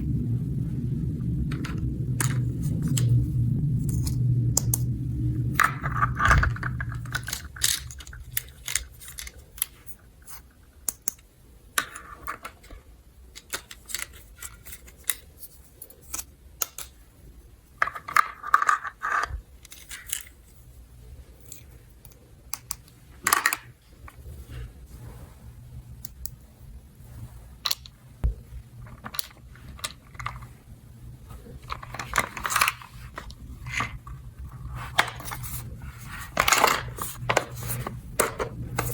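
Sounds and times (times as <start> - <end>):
plastic toy pieces clicking: 5.7 - 11.2, 13.3 - 15.3, 16.0 - 17.0, 31.7 - 34.0.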